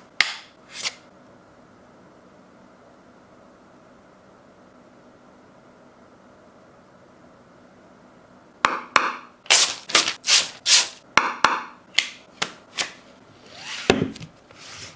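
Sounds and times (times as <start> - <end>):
packaging sliding and rubbing: 0.7 - 1.0, 9.5 - 11.0, 12.7 - 14.9.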